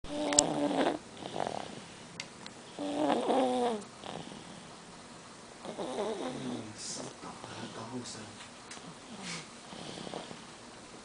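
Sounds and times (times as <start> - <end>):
baby snoring: 0.1 - 2.0, 2.7 - 4.7, 5.6 - 7.9, 9.1 - 10.5.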